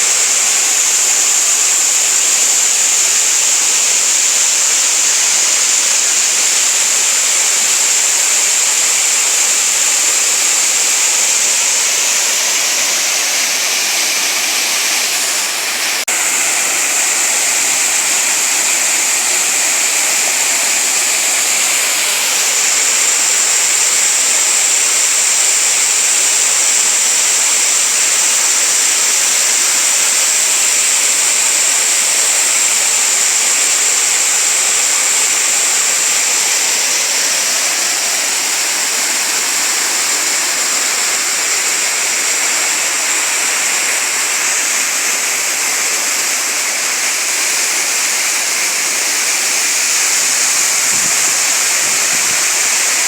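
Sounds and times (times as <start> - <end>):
waterfall rushing: 0.0 - 53.0.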